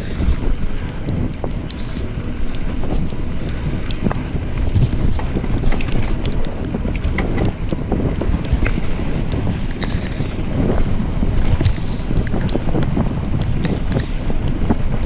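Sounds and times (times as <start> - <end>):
bike rolling rumble: 0.0 - 15.0
small clicks and rattles: 0.0 - 15.0
wind buffeting microphone: 0.0 - 15.0.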